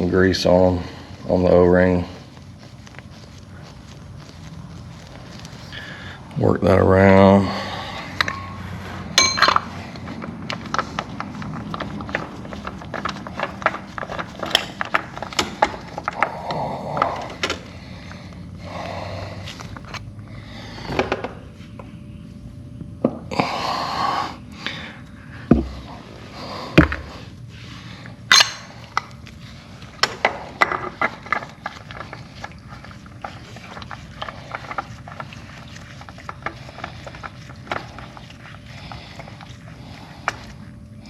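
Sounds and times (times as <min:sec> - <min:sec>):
rustling: 0:00.9 - 0:06.2
metallic clicks and knocks of tools: 0:09.2 - 0:09.7.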